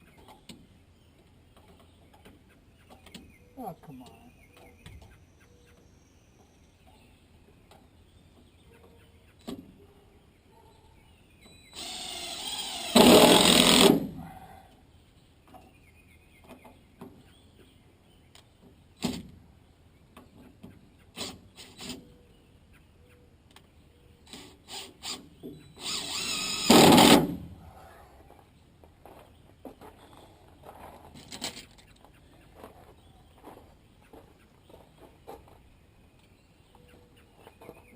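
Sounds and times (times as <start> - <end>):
power drill running: 11.8 - 14.2, 25.8 - 27.4.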